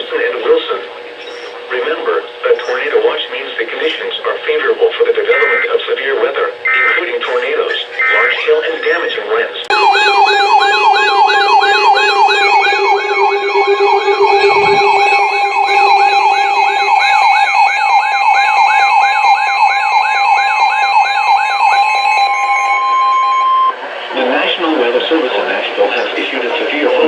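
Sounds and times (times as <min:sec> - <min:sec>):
steady alarm tone: 0:09.7 - 0:23.8
warbling radio alarm: 0:09.7 - 0:23.8.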